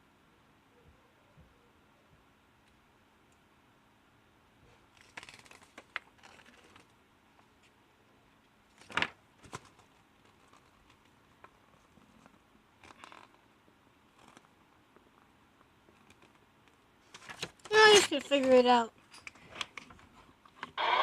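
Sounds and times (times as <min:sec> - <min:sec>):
plastic rustles: 0:04.9 - 0:07.0, 0:08.7 - 0:13.4.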